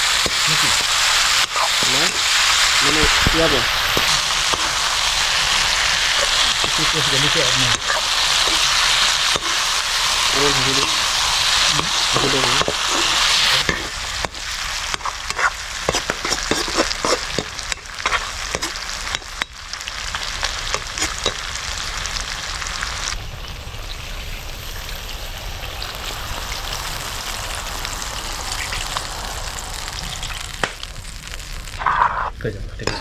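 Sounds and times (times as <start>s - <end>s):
utensil scraping a pan: 0.0s - 19.5s, 20.7s - 21.4s
meat sizzling in a pan: 0.0s - 33.0s.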